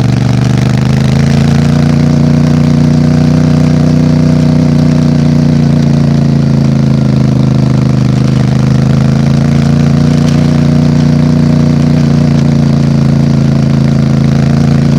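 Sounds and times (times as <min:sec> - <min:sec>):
motorcycle engine idling: 0:00.0 - 0:14.9.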